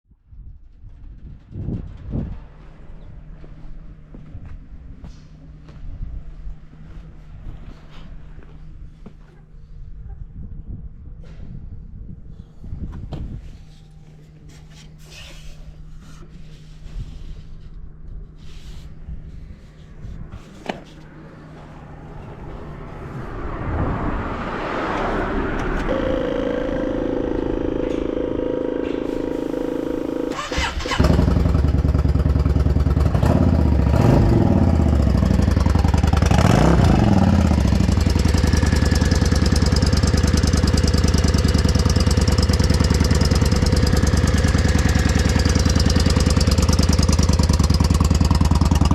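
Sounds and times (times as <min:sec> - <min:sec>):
throttle blips: 0:25.8 - 0:30.5
motorcycle engine idling: 0:25.8 - 0:48.9
starter motor cranking: 0:25.9 - 0:31.7.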